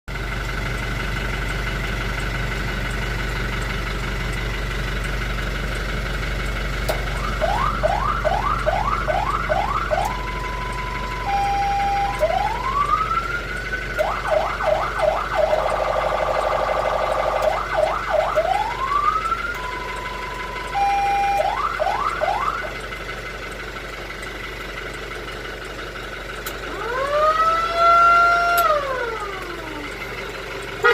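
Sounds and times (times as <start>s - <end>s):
fire truck electronic siren: 6.9s - 22.9s, 26.5s - 30.2s.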